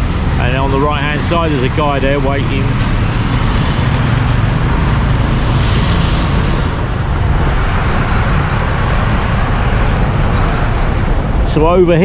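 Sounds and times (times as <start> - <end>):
road hiss: 0.0 - 10.2
traffic rumble: 0.0 - 12.0.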